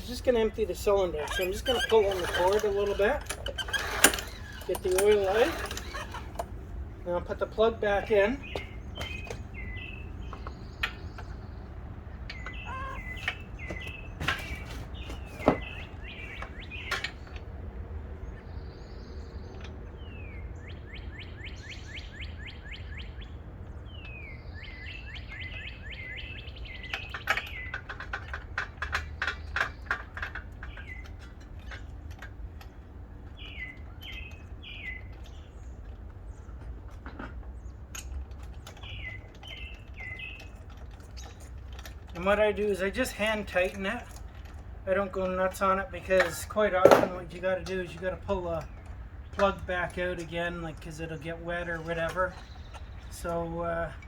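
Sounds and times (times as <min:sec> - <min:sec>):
clicks and knocks of work on mower: 0:00.0 - 0:11.6, 0:12.2 - 0:17.6, 0:25.3 - 0:54.0
low outdoor rumble: 0:00.0 - 0:20.8
small birds chirping and trilling: 0:00.0 - 0:54.0.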